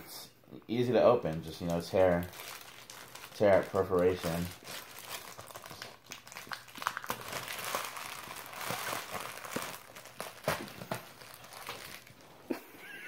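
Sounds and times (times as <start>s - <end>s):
packaging crinkling and rustling: 1.2s - 12.6s
packaging snapping apart: 4.4s - 12.2s.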